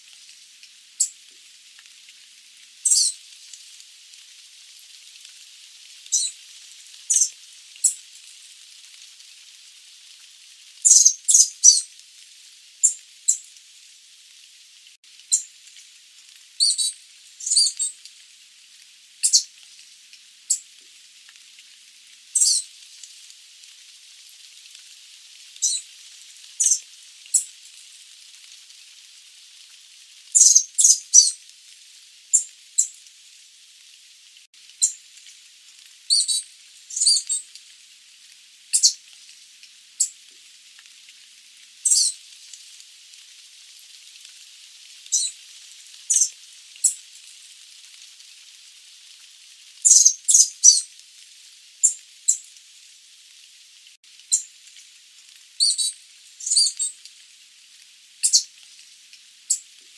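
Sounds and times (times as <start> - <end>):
steady hiss: 0.0 - 59.9
bird high-pitched calls: 2.8 - 3.2, 6.1 - 6.4, 7.1 - 8.0, 10.9 - 11.9, 16.6 - 17.9, 19.2 - 19.5, 22.4 - 22.6, 25.6 - 25.8, 26.6 - 27.5, 30.4 - 31.4, 36.1 - 37.4, 38.8 - 39.0, 41.9 - 42.1, 45.1 - 45.3, 46.1 - 47.0, 49.9 - 50.8, 55.6 - 56.9, 58.2 - 58.5.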